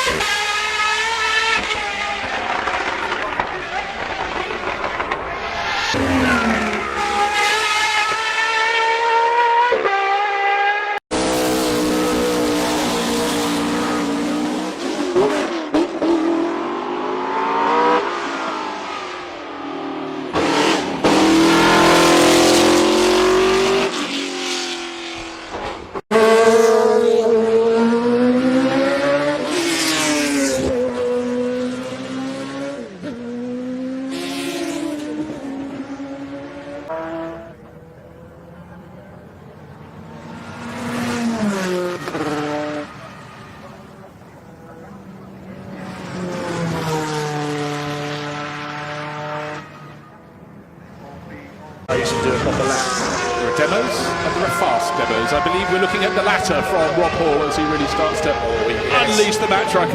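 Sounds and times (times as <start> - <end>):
race car engines revving: 0.0 - 59.9.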